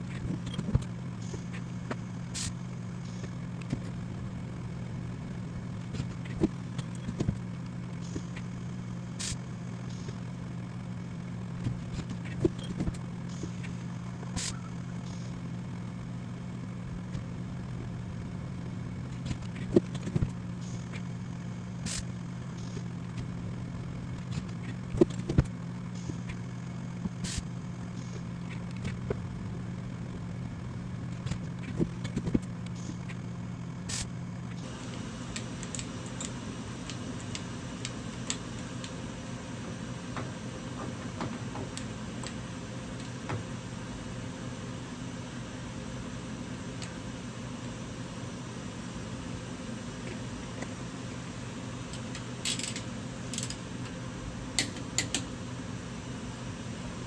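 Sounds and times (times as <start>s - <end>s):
low machine-shop hum: 0.0s - 57.0s
sharp clicks and knocks: 40.1s - 42.4s.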